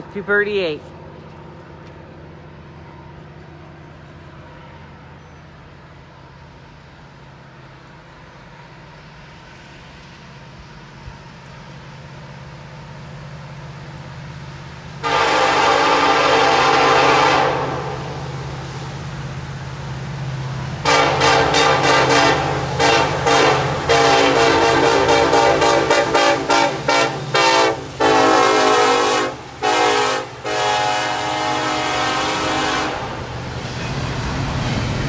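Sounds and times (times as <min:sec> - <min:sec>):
train low rumble: 0:00.0 - 0:35.0
locomotive air horn toots: 0:15.0 - 0:18.4, 0:20.8 - 0:33.3.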